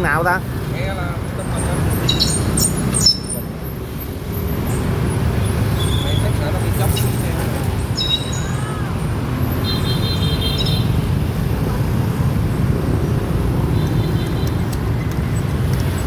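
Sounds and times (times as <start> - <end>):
road traffic rumble: 0.0 - 16.0.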